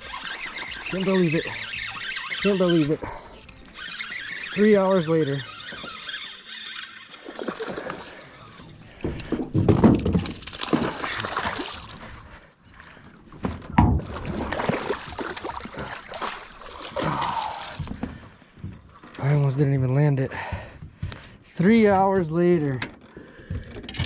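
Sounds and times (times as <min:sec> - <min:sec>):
water splashing around a boat: 0:00.0 - 0:19.5.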